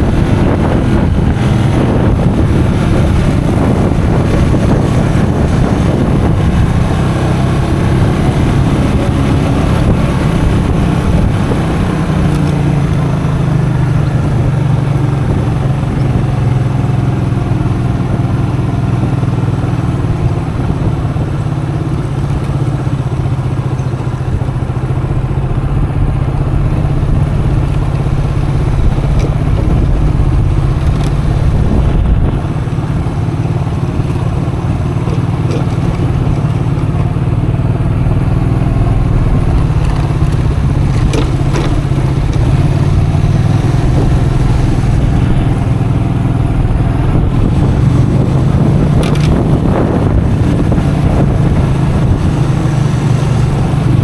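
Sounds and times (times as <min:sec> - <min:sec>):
motorcycle engine running: 0:00.0 - 0:54.0
rush of riding noise: 0:00.0 - 0:54.0.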